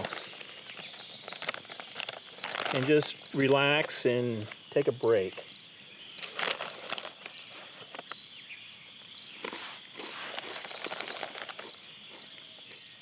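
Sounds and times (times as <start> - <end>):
crackles and rustles: 0.0 - 5.6, 6.2 - 8.3, 9.2 - 12.9
high insect hum: 0.0 - 13.0
insects chirping: 0.0 - 13.0.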